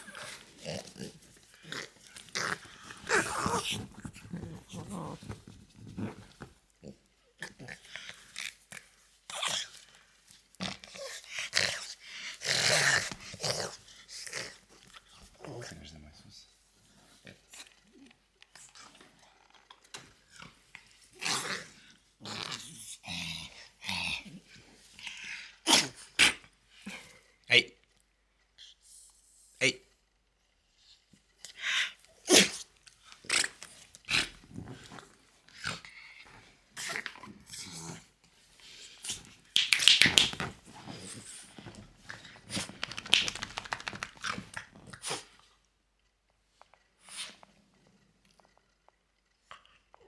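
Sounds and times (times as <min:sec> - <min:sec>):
dog growling and grunting: 0:00.0 - 0:08.6, 0:10.6 - 0:15.9, 0:17.2 - 0:27.2, 0:31.5 - 0:45.4.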